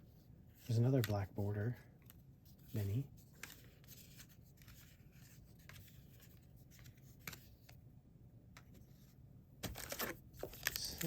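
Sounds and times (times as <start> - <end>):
cards rustling and ticking: 0.5 - 7.8, 8.6 - 11.0.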